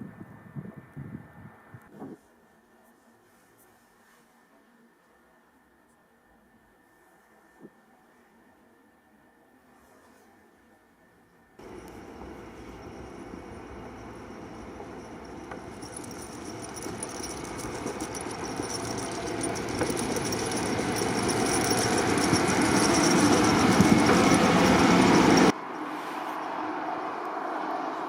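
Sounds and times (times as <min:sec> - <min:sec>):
steady running sound: 0:11.6 - 0:25.5.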